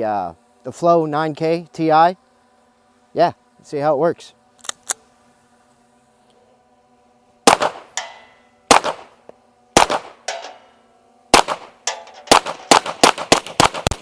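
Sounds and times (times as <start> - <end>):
suppressed pistol shots: 7.5 - 9.1, 9.8 - 10.3, 11.3 - 14.0.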